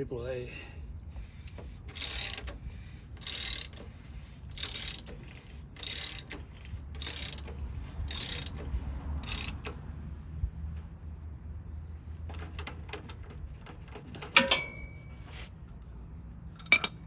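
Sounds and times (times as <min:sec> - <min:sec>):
ratchet wrench rasping: 0:01.2 - 0:09.8, 0:16.5 - 0:17.0.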